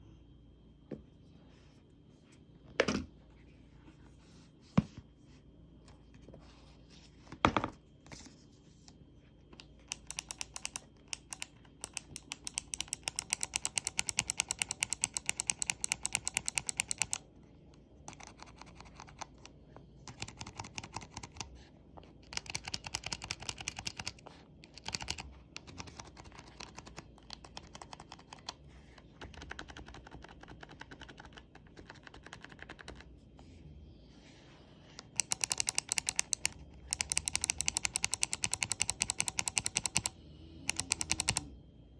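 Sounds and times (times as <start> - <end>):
mechanical keyboard typing: 9.8 - 17.2, 18.1 - 19.4, 20.1 - 21.5, 22.2 - 28.6, 29.2 - 33.1, 35.0 - 40.1, 40.7 - 41.5.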